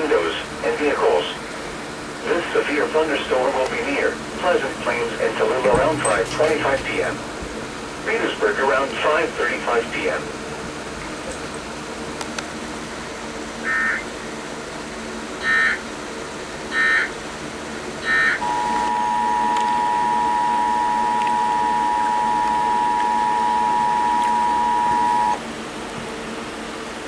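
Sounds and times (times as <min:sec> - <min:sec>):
faint steady hum: 0:00.0 - 0:26.1
two-tone attention signal: 0:18.1 - 0:25.4.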